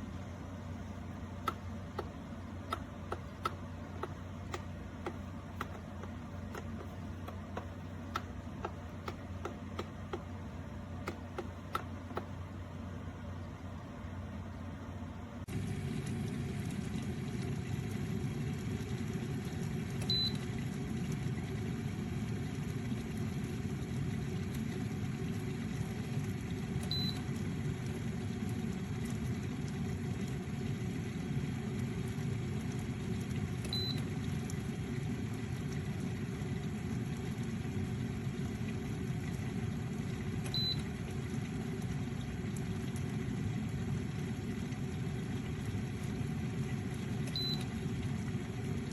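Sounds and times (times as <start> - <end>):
kettle rumbling: 0.0 - 48.9.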